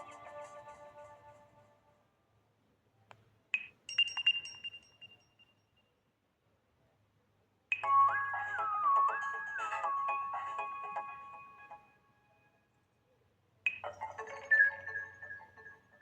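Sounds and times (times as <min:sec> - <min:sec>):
phone chime pings: 0:03.6 - 0:05.2
phone melodic tone: 0:07.7 - 0:11.9, 0:13.7 - 0:16.0.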